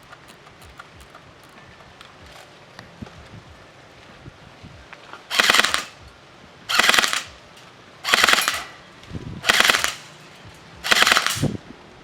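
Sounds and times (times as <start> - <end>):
airsoft rifle automatic bursts: 5.3 - 5.9, 6.7 - 7.4, 8.0 - 8.7, 9.4 - 10.1, 10.8 - 11.5.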